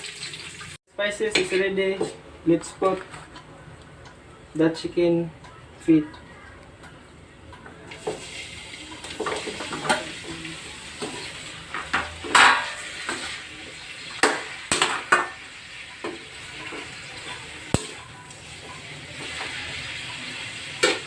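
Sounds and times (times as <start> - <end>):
food sizzling in hot oil: 0.0 - 0.8, 7.9 - 21.0.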